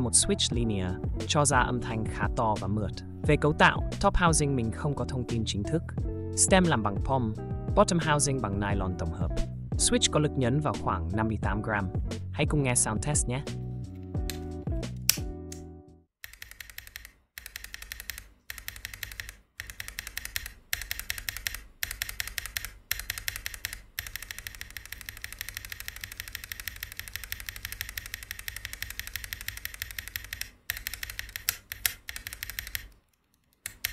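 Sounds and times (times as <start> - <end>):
mechanical keyboard typing: 16.2 - 33.9.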